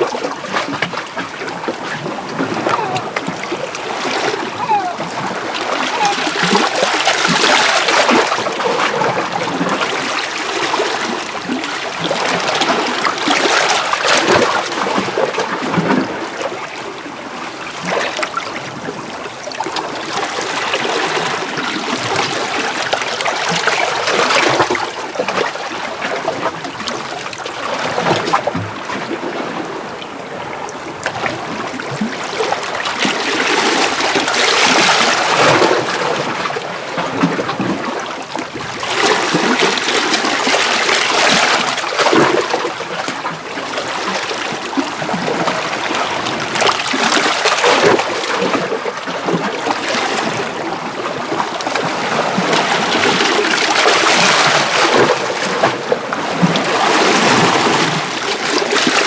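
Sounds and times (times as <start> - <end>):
waves washing over rocks: 0.0 - 16.4.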